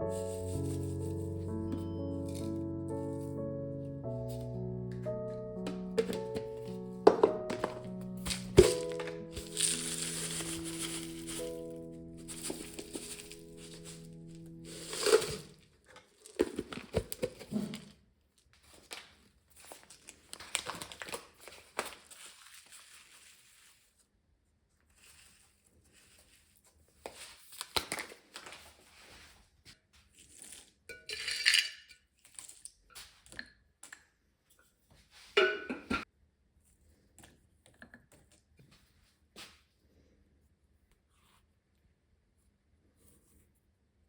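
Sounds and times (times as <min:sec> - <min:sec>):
rustling and crinkling: 0:04.1 - 0:24.1, 0:24.7 - 0:30.8
dishes and cutlery clinking: 0:35.4 - 0:36.0.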